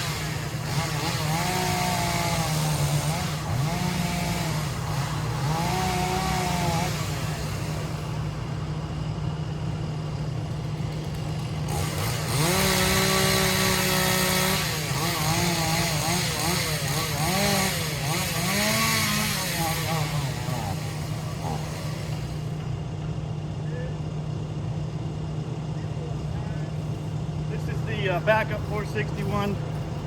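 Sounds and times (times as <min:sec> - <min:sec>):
chainsaw revving: 0:00.0 - 0:08.7, 0:10.1 - 0:22.6.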